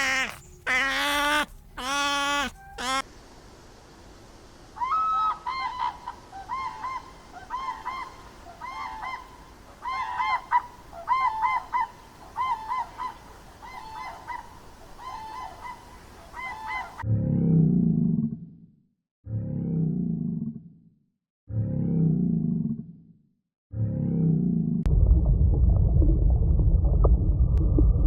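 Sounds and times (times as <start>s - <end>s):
geese honking: 0.0s - 3.1s
loud low animal call: 0.0s - 3.1s.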